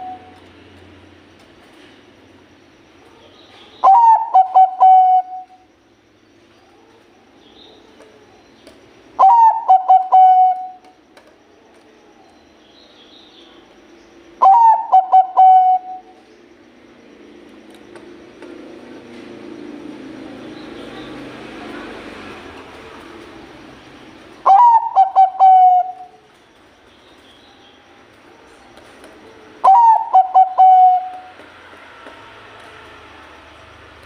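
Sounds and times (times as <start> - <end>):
dove cooing: 3.8 - 5.6, 9.2 - 10.9, 14.4 - 16.2, 24.4 - 26.2, 29.5 - 31.4.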